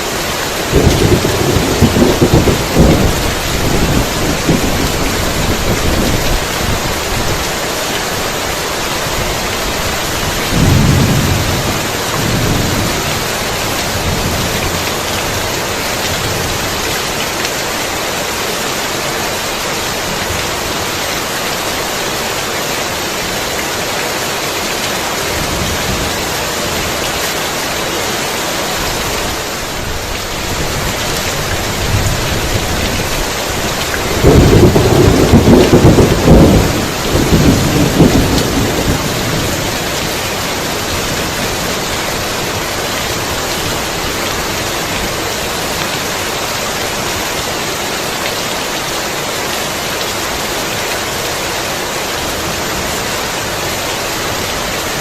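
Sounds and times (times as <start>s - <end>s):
heavy rain pouring: 0.0s - 55.0s
thunder rumbling: 0.7s - 7.4s, 10.2s - 16.8s, 29.8s - 41.8s.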